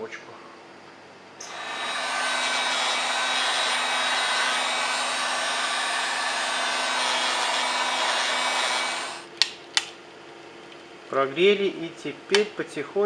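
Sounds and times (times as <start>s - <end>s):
heat gun blowing: 1.4s - 9.3s.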